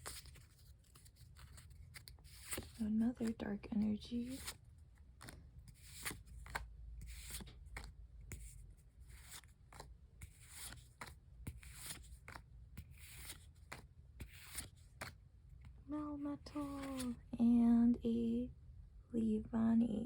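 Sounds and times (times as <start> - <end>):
trading cards flicking and sliding: 0.0 - 3.4, 4.1 - 15.7, 16.6 - 17.2.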